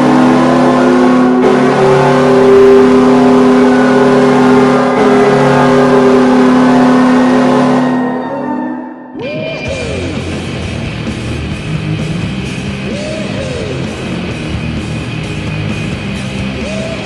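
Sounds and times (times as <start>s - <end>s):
goal horn blast: 0.0s - 9.2s.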